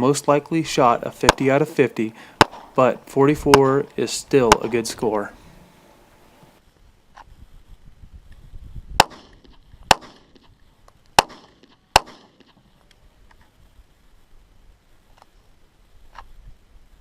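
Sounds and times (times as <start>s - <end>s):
pistol shots echoing: 1.2s - 1.6s, 2.4s - 5.0s, 9.0s - 10.4s, 11.2s - 12.5s.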